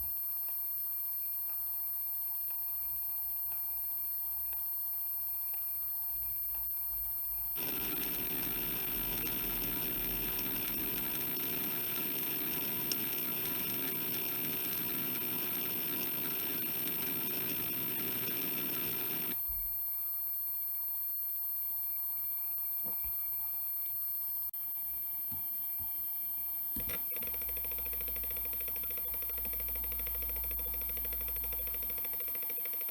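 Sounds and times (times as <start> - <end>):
hard drive heads seeking: 7.6 - 19.4
steady high whine: 7.6 - 19.4.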